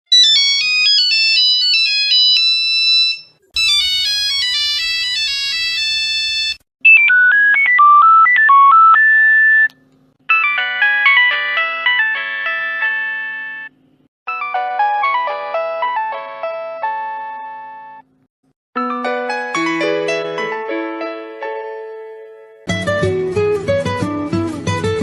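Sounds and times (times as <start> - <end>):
mobile phone ringtone melodies: 0.1 - 9.7, 10.3 - 13.7, 14.3 - 18.0.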